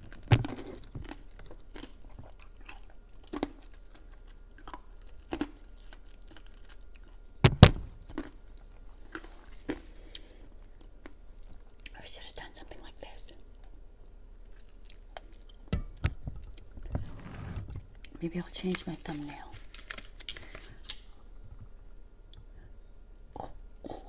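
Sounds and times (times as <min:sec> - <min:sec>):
person chewing food: 0:00.0 - 0:07.3, 0:08.0 - 0:12.0, 0:14.4 - 0:15.7.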